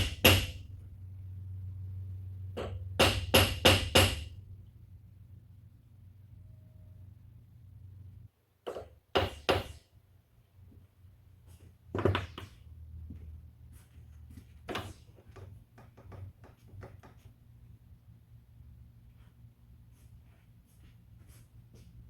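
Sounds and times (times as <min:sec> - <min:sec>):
sharp knocks on metal: 0:00.0 - 0:00.6, 0:02.6 - 0:04.3, 0:08.6 - 0:09.8.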